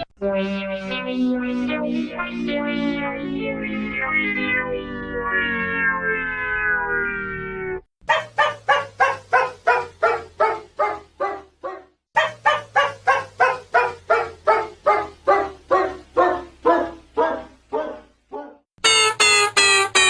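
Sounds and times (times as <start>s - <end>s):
cartoon dog barking: 8.0s - 18.6s.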